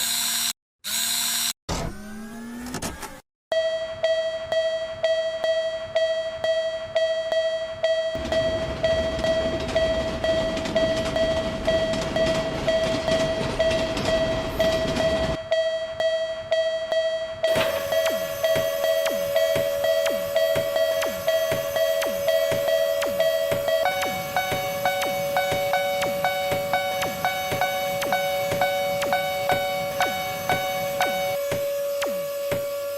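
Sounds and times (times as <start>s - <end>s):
lower crossing bell: 3.5s - 31.4s
railroad crossing bell ringing: 3.5s - 31.5s
passing train rushing: 8.2s - 15.4s, 17.4s - 31.4s.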